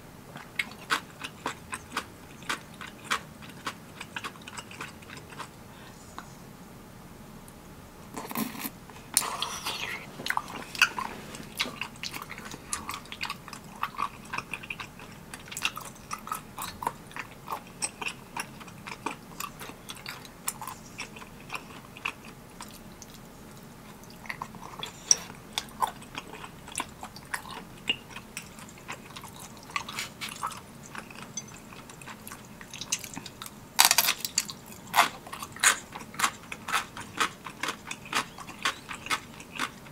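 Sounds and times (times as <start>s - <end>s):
wet chewing and mouth smacks: 8.2s - 33.6s.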